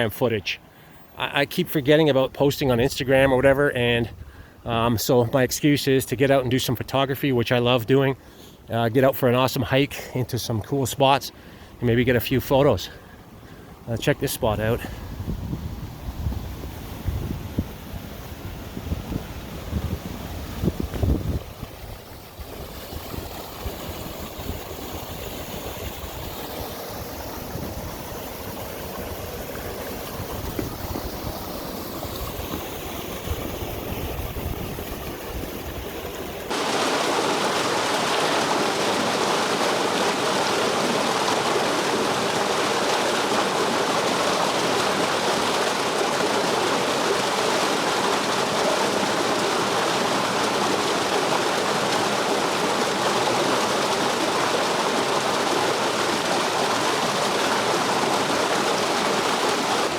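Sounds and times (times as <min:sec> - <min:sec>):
faint rushing water: 0:00.0 - 0:59.9
loud rushing stream: 0:09.5 - 0:59.9
wind buffeting microphone: 0:14.9 - 0:36.6.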